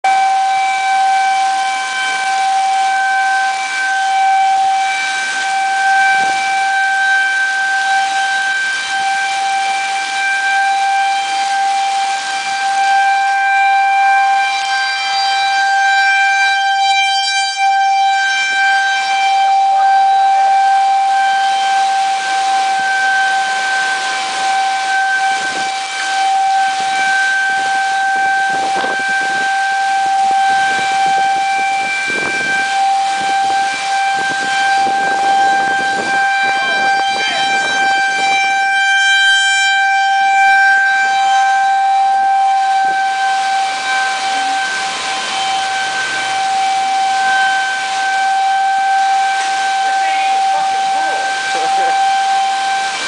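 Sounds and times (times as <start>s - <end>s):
tornado warning sirens: 0.0s - 53.0s.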